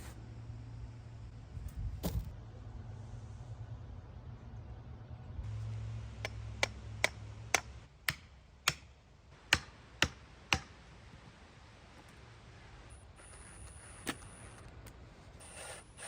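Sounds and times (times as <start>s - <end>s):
low steady hum: 0.0s - 16.0s
hammer striking wood: 6.2s - 8.9s, 9.5s - 10.7s.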